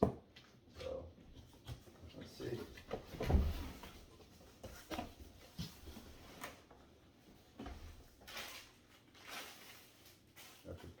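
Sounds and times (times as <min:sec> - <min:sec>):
packaging rustling: 0:08.1 - 0:11.0.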